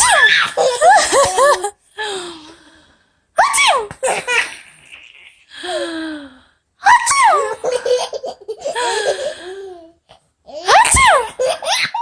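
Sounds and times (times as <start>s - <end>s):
baby belly-laughing: 0.2s - 1.7s, 7.3s - 10.0s, 10.6s - 12.0s.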